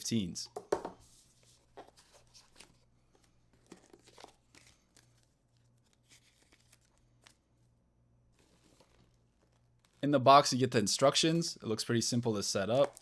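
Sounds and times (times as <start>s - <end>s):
cardboard box rustling: 3.5s - 5.2s.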